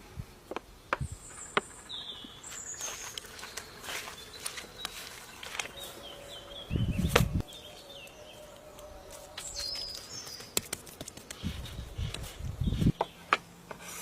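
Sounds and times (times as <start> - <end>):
birds chirping: 0.9 - 10.6, 11.3 - 13.6.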